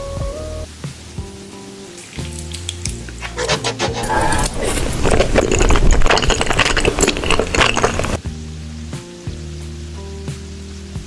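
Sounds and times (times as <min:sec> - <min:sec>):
close crunching and crackling: 0:02.0 - 0:08.2.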